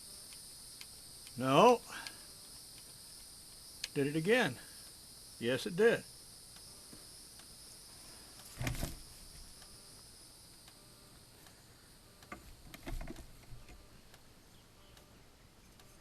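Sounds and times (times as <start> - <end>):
crickets chirring: 0.0 - 16.0
dull thump: 8.5 - 9.1.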